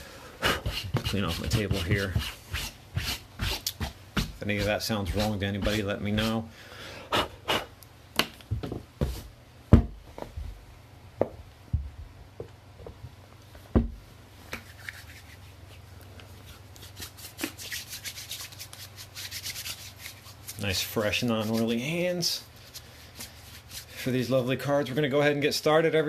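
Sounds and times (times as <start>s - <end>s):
hands rubbing together: 14.5s - 21.8s, 22.6s - 24.2s.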